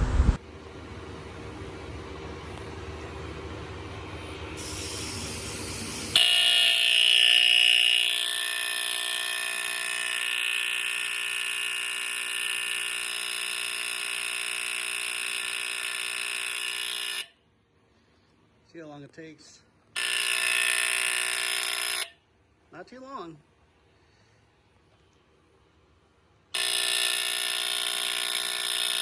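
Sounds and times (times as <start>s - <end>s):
low rumble: 0.0s - 0.4s
high hiss: 4.6s - 6.2s
smoke alarm horn tone: 4.6s - 7.5s, 8.1s - 17.3s, 20.0s - 22.1s, 26.6s - 29.0s.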